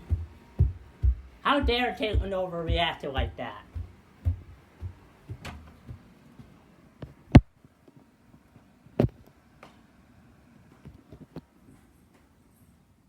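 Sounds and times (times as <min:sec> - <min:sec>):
knocks and thumps: 0:00.0 - 0:07.5
faint room noise: 0:00.0 - 0:13.0.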